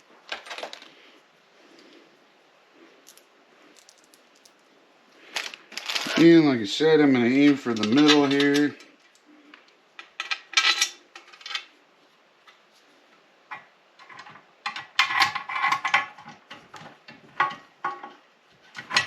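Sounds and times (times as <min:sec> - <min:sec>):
metal bolts clinking on metal plate: 0:10.0 - 0:11.7.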